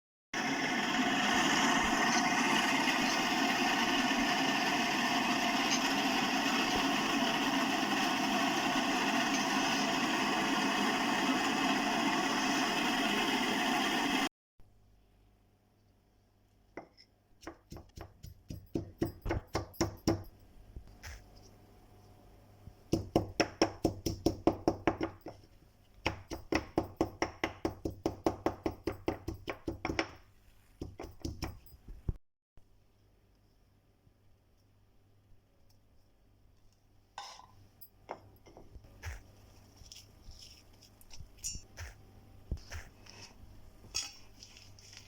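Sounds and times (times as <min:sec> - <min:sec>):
mixer grinder running: 0:00.4 - 0:14.3.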